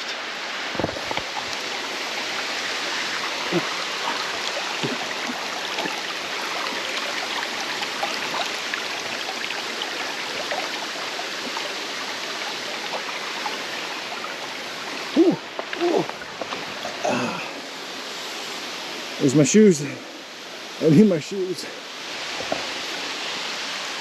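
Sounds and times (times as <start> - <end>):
creek water rushing: 0.0 - 24.0
short vocal sounds: 15.1 - 16.1.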